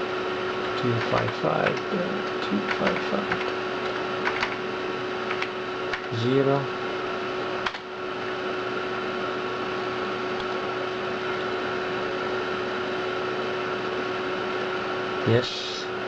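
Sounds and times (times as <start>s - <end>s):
computer whirring hum: 0.0s - 16.0s
sharp click: 7.6s - 7.9s.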